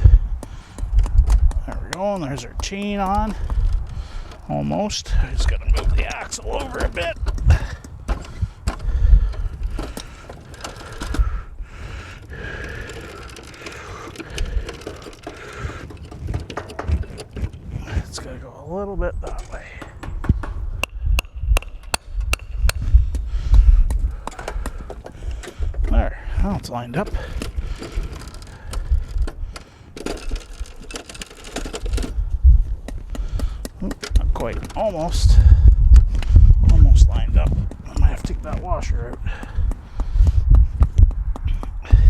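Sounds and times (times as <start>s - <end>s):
metal clicks and knocks: 0.0s - 11.4s, 12.1s - 18.4s, 19.2s - 35.4s, 36.0s - 41.8s
metal parts clinking: 5.2s - 11.3s, 12.2s - 18.4s, 26.6s - 32.3s.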